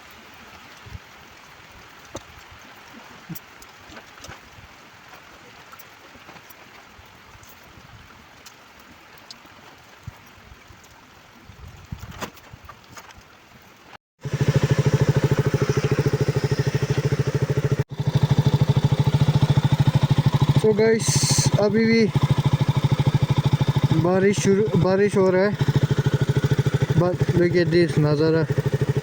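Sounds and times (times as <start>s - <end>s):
faint steady rain: 0.0s - 29.0s
motorcycle engine idling: 14.2s - 29.0s.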